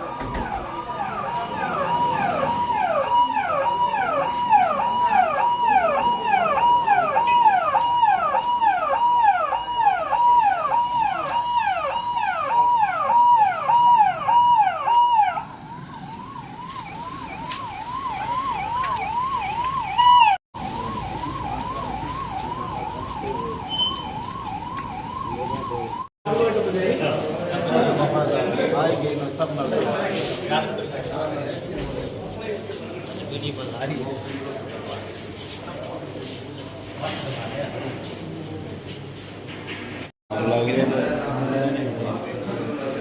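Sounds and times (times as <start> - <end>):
sirens yelping: 0.0 - 26.1.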